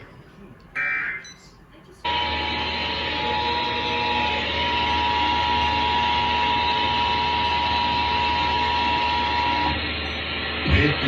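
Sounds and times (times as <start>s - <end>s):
broadcast static hiss: 0.0s - 1.8s
two-tone alert tone: 0.8s - 1.4s.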